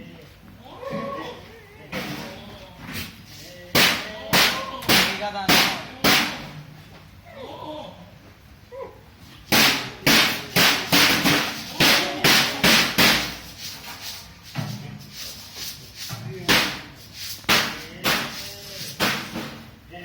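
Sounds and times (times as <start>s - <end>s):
sharp cracking knocks: 9.5s - 13.5s, 16.5s - 19.7s.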